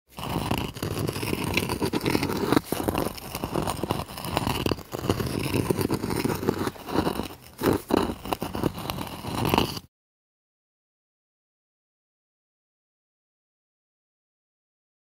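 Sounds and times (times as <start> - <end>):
rock scraping on stone: 0.1 - 9.9.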